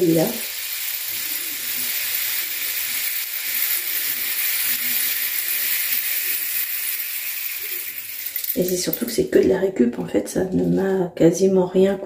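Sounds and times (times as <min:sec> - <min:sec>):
rain stick trickling hiss: 0:00.0 - 0:09.2.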